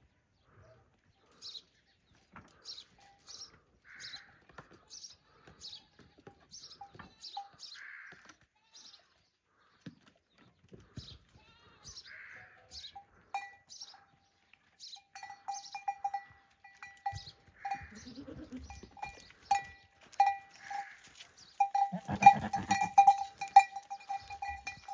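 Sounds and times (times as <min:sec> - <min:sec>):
goat bells clanking: 0:06.2 - 0:07.8, 0:12.7 - 0:14.0, 0:14.8 - 0:24.9.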